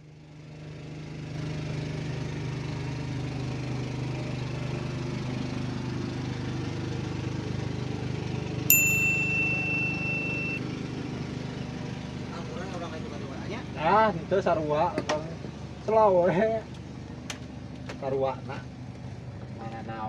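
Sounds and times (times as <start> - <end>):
engine humming: 2.5 - 20.0
sharp high ding: 8.7 - 10.6.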